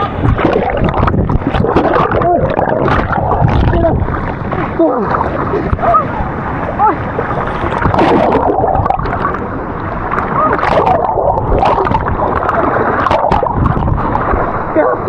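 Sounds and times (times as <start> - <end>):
water splashing: 0.0 - 15.0.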